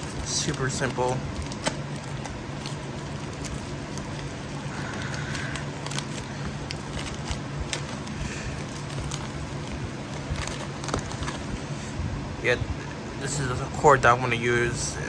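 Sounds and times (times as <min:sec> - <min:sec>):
package and cable rustling: 0:00.0 - 0:11.9
steady low hum: 0:00.0 - 0:15.0.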